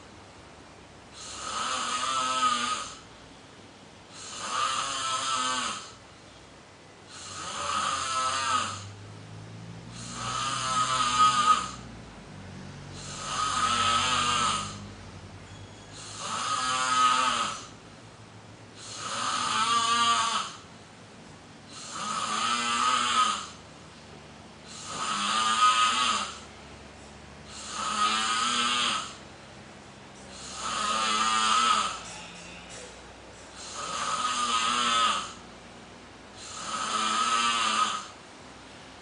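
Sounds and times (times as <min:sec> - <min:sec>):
person snoring: 0:01.1 - 0:03.0, 0:04.1 - 0:06.0, 0:07.1 - 0:09.0, 0:09.8 - 0:11.9, 0:12.8 - 0:14.9, 0:16.0 - 0:17.8, 0:18.8 - 0:20.6, 0:21.7 - 0:23.6, 0:24.6 - 0:26.5, 0:27.4 - 0:29.2, 0:30.3 - 0:32.8, 0:33.5 - 0:35.4, 0:36.4 - 0:38.2
quiet breathing: 0:12.5 - 0:16.3, 0:30.2 - 0:34.2.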